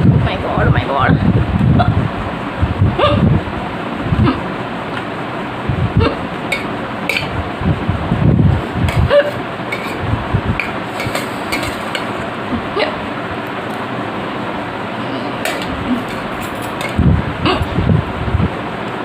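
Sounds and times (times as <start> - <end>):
electric fan hum: 0.0 - 19.0
woman hiccuping: 3.0 - 3.3, 4.2 - 4.5, 6.0 - 6.7, 9.0 - 9.4, 17.4 - 17.8.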